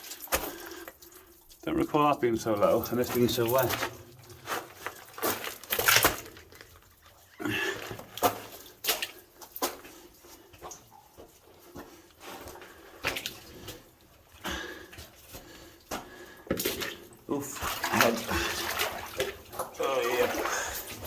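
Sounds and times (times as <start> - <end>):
footsteps splashing through water: 0.0 - 21.0.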